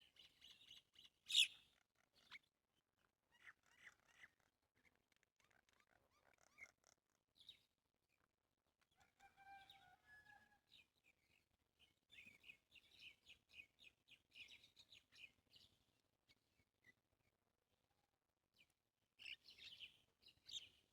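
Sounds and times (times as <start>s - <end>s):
songbirds chirping: 18.6s - 20.9s.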